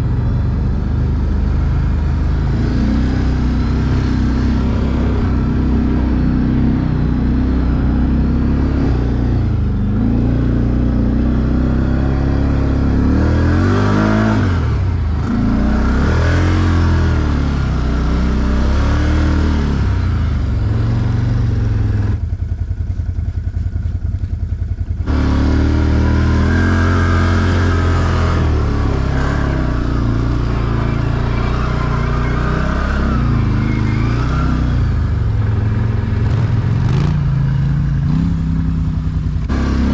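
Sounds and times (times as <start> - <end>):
atv engine revving: 0.0 - 39.9.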